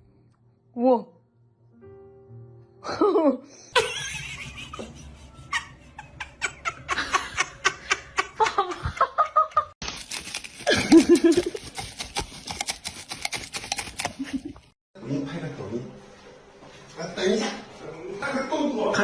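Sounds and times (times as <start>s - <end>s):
people laughing: 2.9s - 9.7s.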